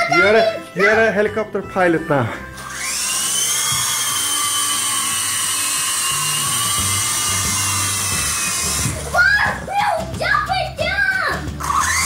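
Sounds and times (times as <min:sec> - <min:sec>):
toy helicopter motors whining: 0:02.5 - 0:09.6, 0:11.4 - 0:12.0.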